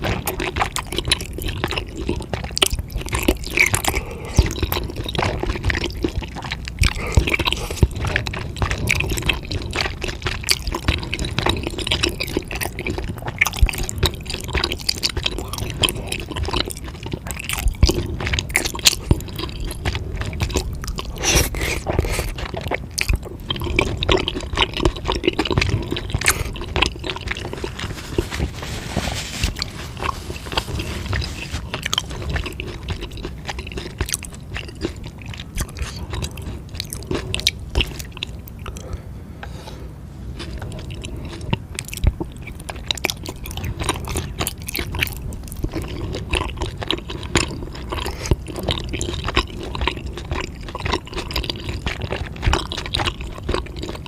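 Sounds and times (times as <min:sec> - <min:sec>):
chewing and biting food: 0:00.0 - 0:54.0.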